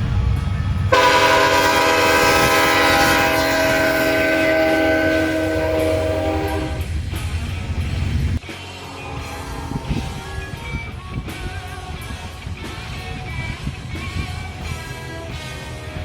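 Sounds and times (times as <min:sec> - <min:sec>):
train horn blast: 0:00.9 - 0:07.0
low rumble: 0:02.3 - 0:14.8.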